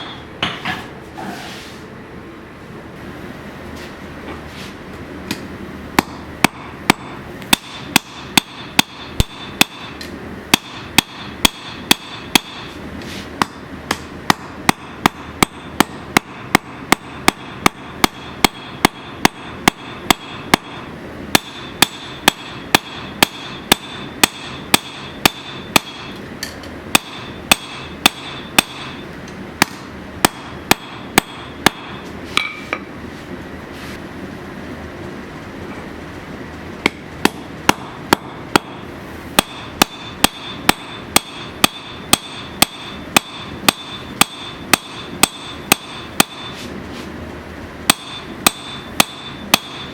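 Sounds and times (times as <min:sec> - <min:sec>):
hammer striking steel on anvil: 0:00.0 - 0:00.9, 0:05.3 - 0:12.8, 0:13.4 - 0:32.9, 0:36.8 - 0:46.7, 0:47.8 - 0:49.9
high metallic ringing: 0:14.3 - 0:26.2, 0:26.9 - 0:32.9, 0:37.7 - 0:46.7, 0:47.9 - 0:49.9.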